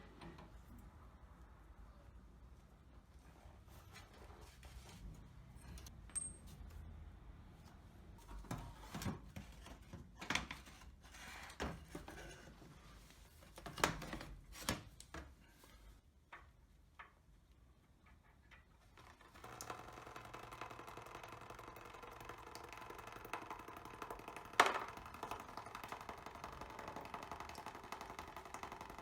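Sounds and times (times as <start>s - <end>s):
knocks and clinks of tools: 5.7s - 6.6s
mechanical running sound: 19.2s - 29.0s.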